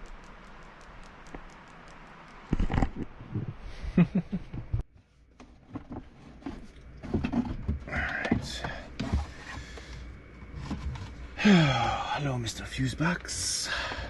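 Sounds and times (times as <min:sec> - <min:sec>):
light clicks: 0:00.0 - 0:02.9
objects clunking and knocking: 0:04.6 - 0:11.2.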